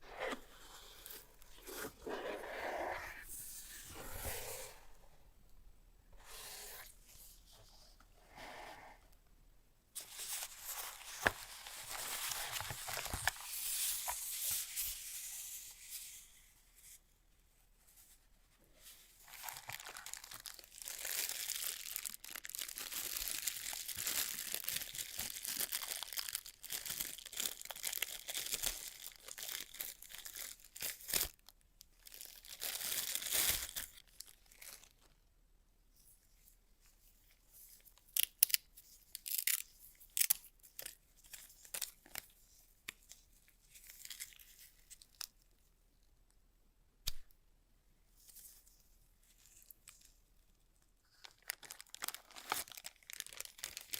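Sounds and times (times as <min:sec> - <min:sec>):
packaging being torn and crinkled: 0:10.0 - 0:14.6, 0:19.2 - 0:31.4, 0:32.1 - 0:35.0, 0:38.2 - 0:42.2, 0:51.2 - 0:53.9.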